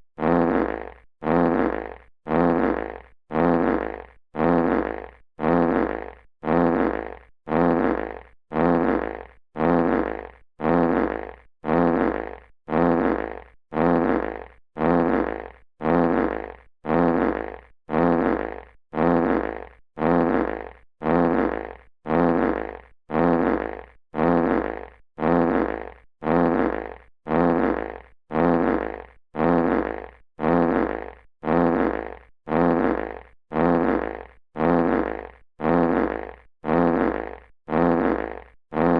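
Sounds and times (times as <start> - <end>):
fart sound effect: 0.2 - 38.9.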